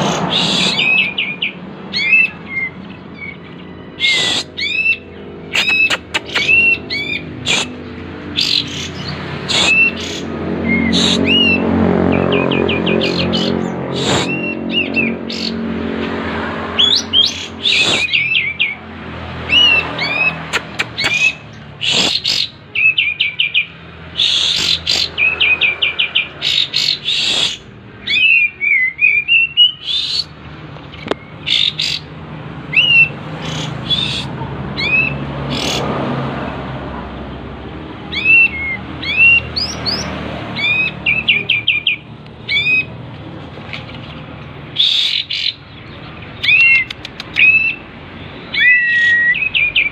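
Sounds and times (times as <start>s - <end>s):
songbird singing whistled notes: 44.8s - 47.9s, 48.5s - 49.9s.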